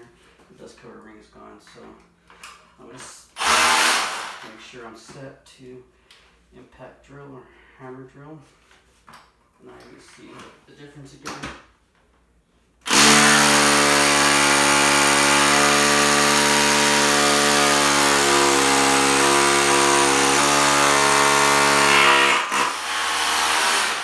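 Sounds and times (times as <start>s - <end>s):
rotary hammer drilling concrete: 3.4s - 4.5s, 12.9s - 24.0s.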